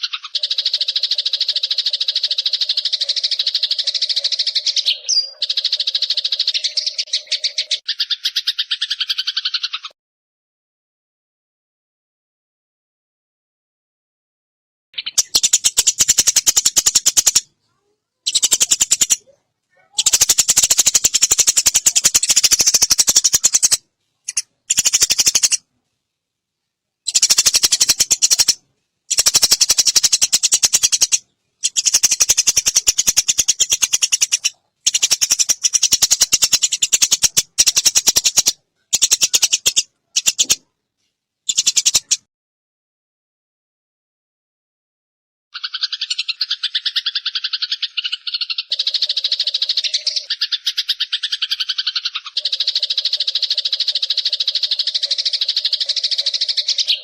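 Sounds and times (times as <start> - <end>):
sparrow chattering: 0.0 - 10.0, 15.0 - 25.6, 27.0 - 40.6, 41.5 - 42.3, 45.6 - 57.0.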